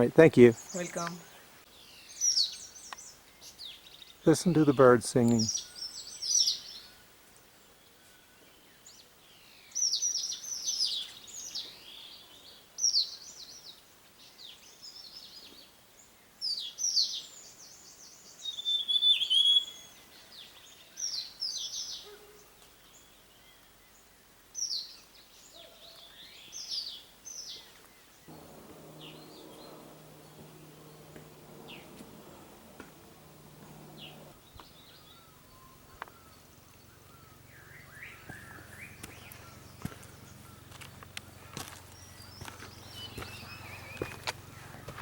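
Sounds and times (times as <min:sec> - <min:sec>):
birds singing: 0:00.0 - 0:07.1, 0:24.6 - 0:45.0.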